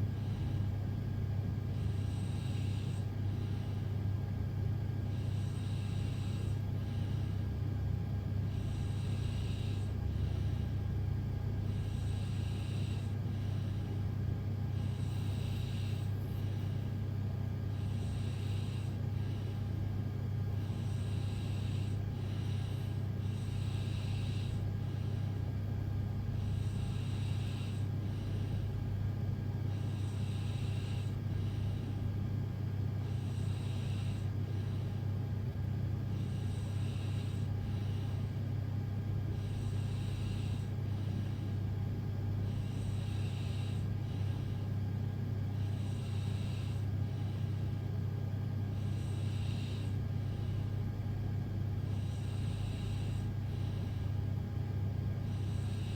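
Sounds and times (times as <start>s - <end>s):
person snoring: 8.5s - 10.7s, 11.7s - 13.8s, 14.8s - 17.0s, 17.7s - 19.6s, 20.6s - 25.2s, 26.4s - 28.8s, 29.7s - 31.8s, 39.4s - 41.5s, 55.4s - 55.9s.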